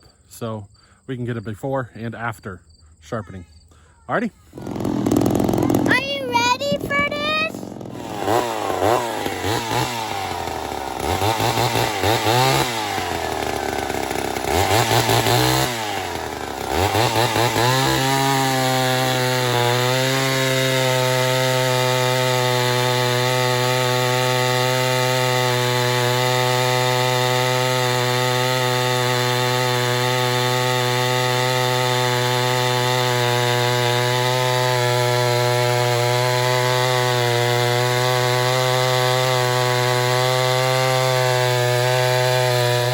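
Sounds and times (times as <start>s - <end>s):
chainsaw revving and cutting wood: 4.4s - 42.9s.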